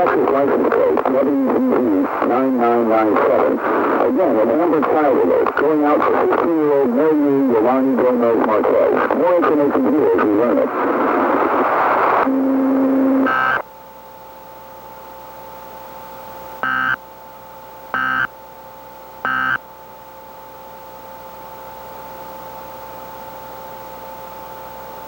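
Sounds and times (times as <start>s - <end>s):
loud static: 0.0s - 17.0s, 17.6s - 18.4s, 19.0s - 19.7s
faint steady tone: 12.2s - 25.0s
data bursts: 12.3s - 13.6s, 16.6s - 17.0s, 18.0s - 18.3s, 19.2s - 19.6s.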